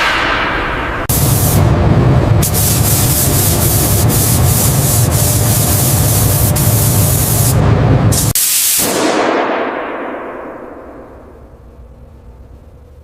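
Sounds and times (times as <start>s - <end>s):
pressurised spraying tool hissing: 1.1s - 1.6s, 2.4s - 7.6s, 8.2s - 8.9s.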